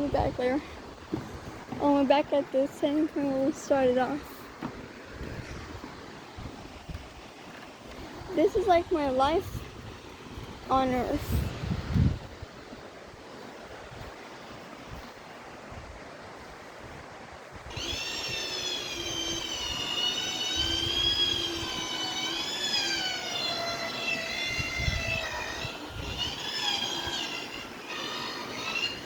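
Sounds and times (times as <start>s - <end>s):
wind: 0.0s - 29.0s
water hissing: 17.7s - 29.0s
zipline pulleys whining on cable: 17.7s - 29.0s.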